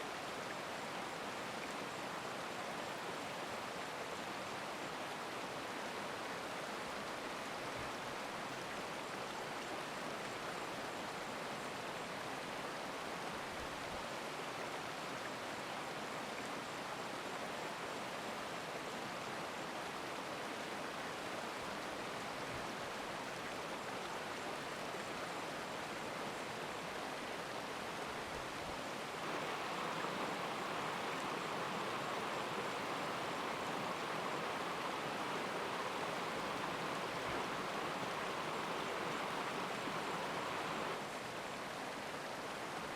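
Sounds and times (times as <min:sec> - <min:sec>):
stream rushing: 0:28.9 - 0:42.6.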